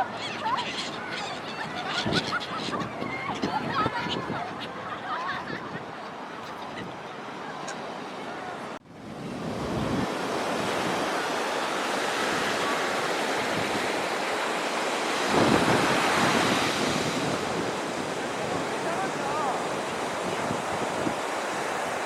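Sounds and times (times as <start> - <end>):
sea waves breaking on beach: 7.2 - 22.0.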